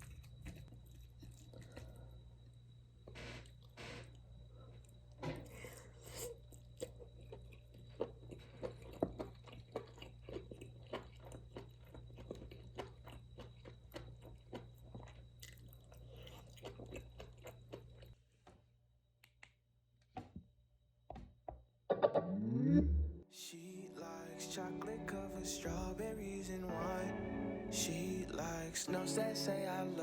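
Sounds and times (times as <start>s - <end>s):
person chewing: 0.0s - 2.5s, 4.8s - 18.2s.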